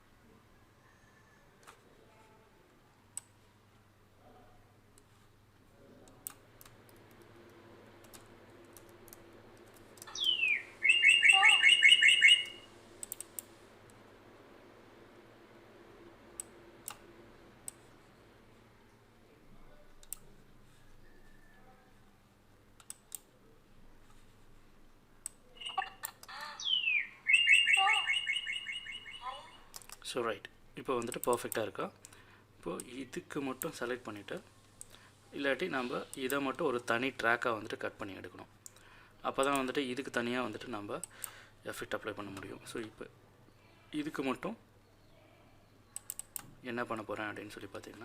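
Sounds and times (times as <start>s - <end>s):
bird call whistle and trill: 10.1s - 12.6s, 26.6s - 29.3s
sharp clicks: 12.4s - 13.5s, 16.4s - 17.0s, 22.8s - 23.3s, 29.7s - 30.0s, 31.0s - 32.2s, 46.0s - 46.6s.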